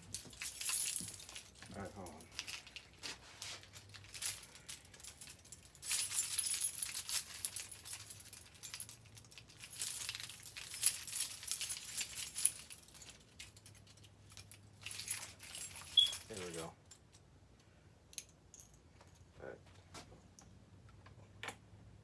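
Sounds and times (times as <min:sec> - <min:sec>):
scraping and rustling: 0:00.1 - 0:04.8.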